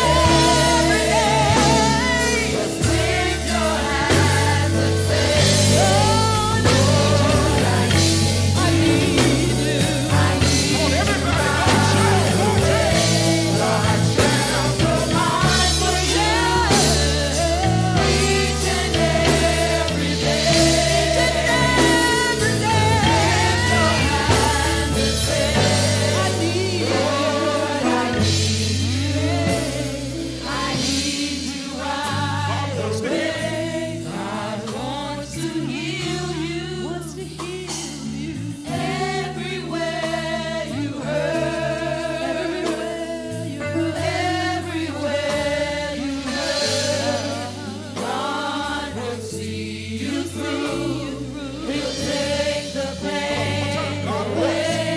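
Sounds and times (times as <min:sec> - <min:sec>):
solo voice singing: 0:00.0 - 0:31.6
band playing: 0:00.0 - 0:54.9
gospel choir singing: 0:00.0 - 0:54.9
sustained bass notes: 0:00.0 - 0:54.9.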